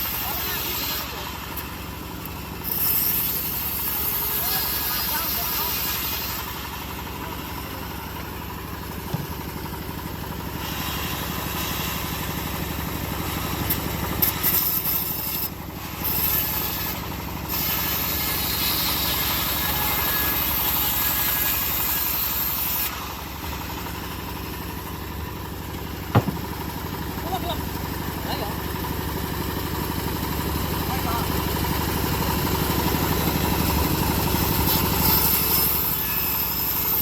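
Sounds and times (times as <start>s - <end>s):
saw blade rasping through wood: 0.0s - 9.3s, 10.5s - 24.6s, 25.7s - 27.2s, 30.7s - 37.0s
sawmill engine running: 0.0s - 37.0s
sharp knock: 26.1s - 26.6s.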